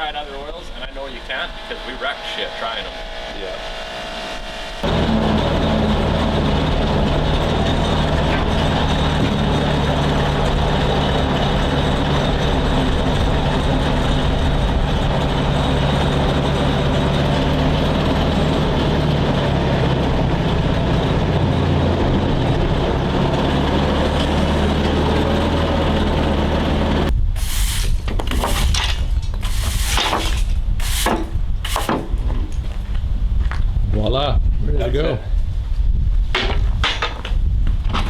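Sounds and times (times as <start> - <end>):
machine humming: 0.1 - 8.2
scraping rubbing strokes: 27.4 - 32.1.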